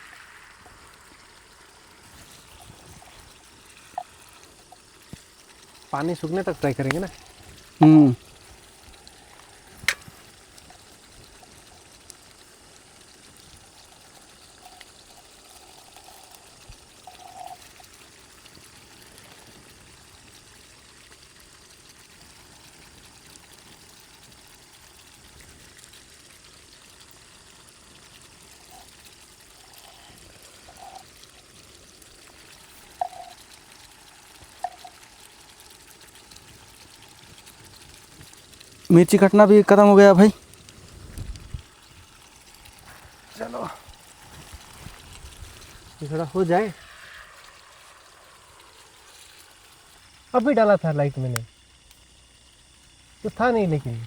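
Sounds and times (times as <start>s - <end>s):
chicken sizzling in a pan: 0.0s - 54.0s.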